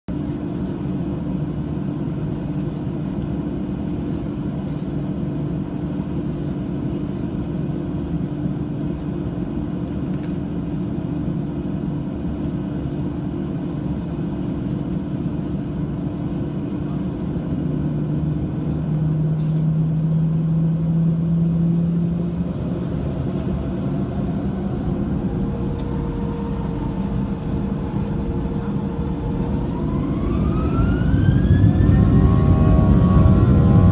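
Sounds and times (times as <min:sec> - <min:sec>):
jet engines rumbling in cabin: 0:00.1 - 0:33.9
jet engine whine rising: 0:00.4 - 0:33.9.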